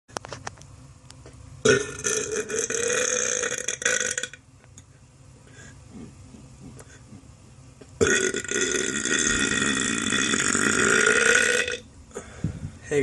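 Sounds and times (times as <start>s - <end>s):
man burping: 1.6s - 4.4s, 8.0s - 12.3s.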